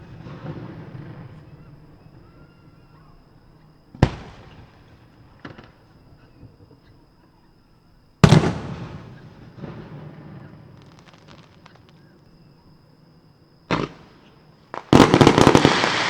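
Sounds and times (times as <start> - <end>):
firework shells bursting: 14.7 - 16.0.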